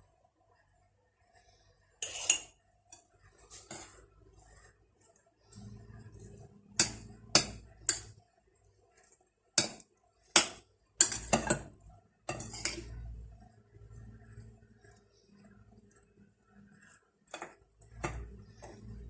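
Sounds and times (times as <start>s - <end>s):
spoon clinking against a bowl: 10.4s - 11.7s.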